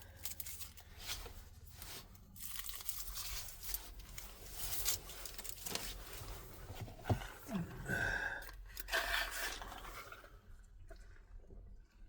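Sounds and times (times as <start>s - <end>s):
paper packaging rustling and tearing: 0.0s - 6.3s.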